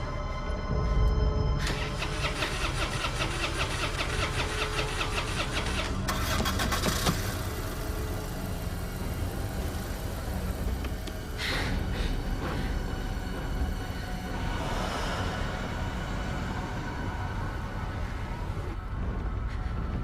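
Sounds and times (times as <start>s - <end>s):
car starter cranking engine: 1.6s - 10.0s.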